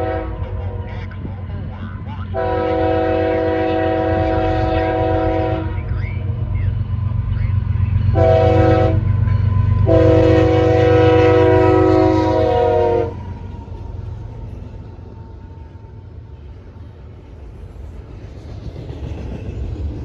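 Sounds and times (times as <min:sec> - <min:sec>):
locomotive air horn chord: 0:00.0 - 0:00.8, 0:02.3 - 0:05.8, 0:08.1 - 0:09.1, 0:09.8 - 0:13.2.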